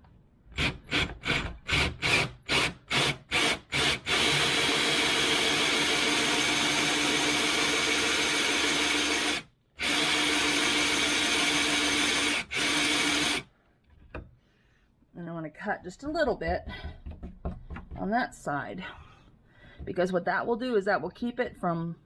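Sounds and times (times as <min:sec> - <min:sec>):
drill trigger bursts: 0:00.6 - 0:13.5
power drill with hole saw: 0:00.6 - 0:13.5.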